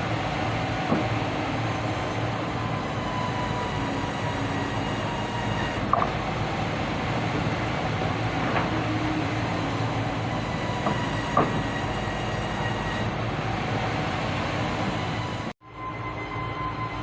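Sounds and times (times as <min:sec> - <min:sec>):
bandsaw machinery running: 0:00.0 - 0:15.5
sharp knocks: 0:10.8 - 0:11.8.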